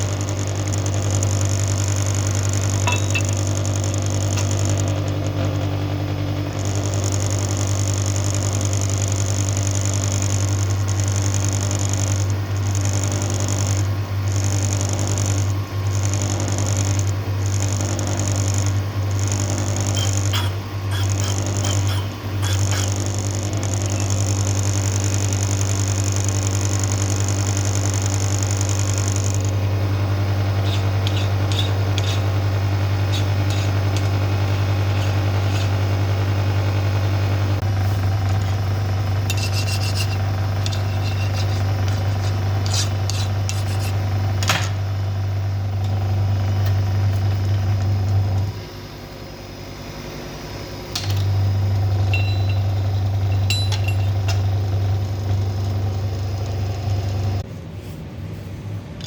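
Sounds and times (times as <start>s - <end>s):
electric motor humming: 0.0s - 57.4s
metal clicks and clinks: 2.8s - 3.4s, 53.3s - 54.4s.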